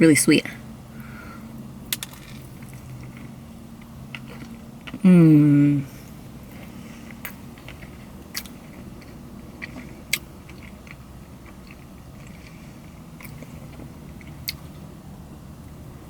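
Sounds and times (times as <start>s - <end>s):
mouth chewing soft donut: 2.3s - 15.0s.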